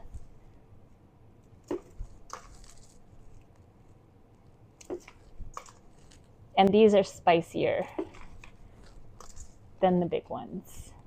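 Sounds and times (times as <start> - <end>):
dried chiles crackling: 1.6 - 6.5, 7.9 - 9.7.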